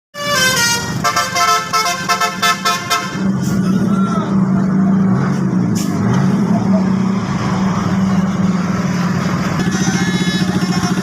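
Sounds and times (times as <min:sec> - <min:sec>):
multi-tone bus horn tune: 0:00.2 - 0:03.6, 0:09.6 - 0:11.0
low engine drone: 0:00.3 - 0:11.0.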